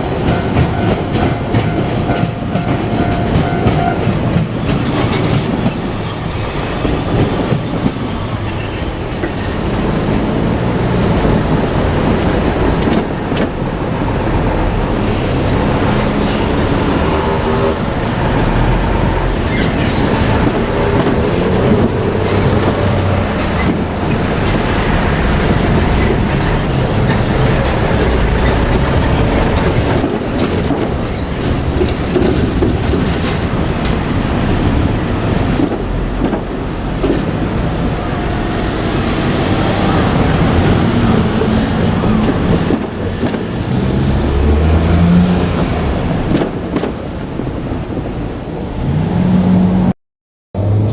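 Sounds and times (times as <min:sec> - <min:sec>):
train running past: 0:00.0 - 0:49.9.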